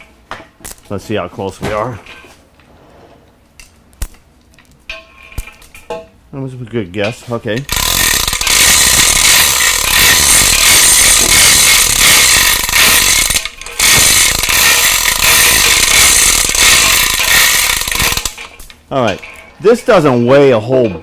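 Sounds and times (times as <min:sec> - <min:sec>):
overhead hoist running: 0:07.7 - 0:18.6.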